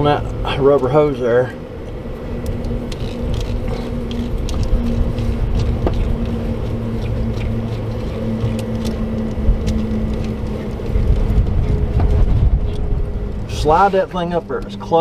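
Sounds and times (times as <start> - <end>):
low machine hum: 0.0 - 15.0.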